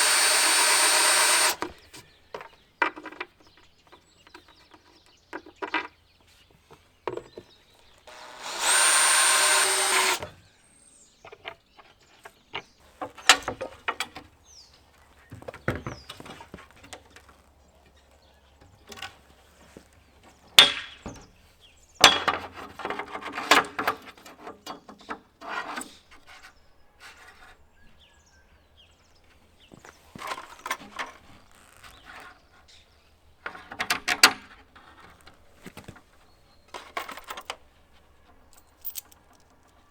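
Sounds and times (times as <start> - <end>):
cordless drill driving screw: 0.0 - 1.8, 8.1 - 10.4
tools and wood clattering: 0.0 - 10.5, 11.2 - 28.1, 29.2 - 39.9.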